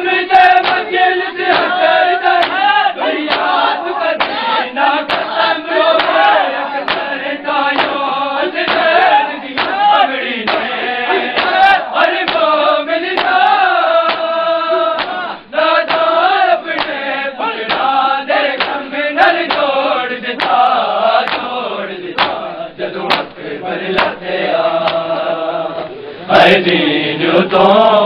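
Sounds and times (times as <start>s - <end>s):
rhythmic chest slaps: 0.0s - 26.0s
men chanting in unison: 0.0s - 28.0s.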